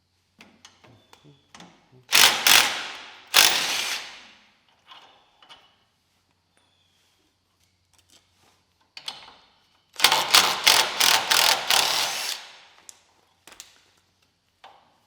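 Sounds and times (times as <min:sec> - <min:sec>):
impact driver rattling: 0:02.1 - 0:04.3, 0:10.0 - 0:12.6.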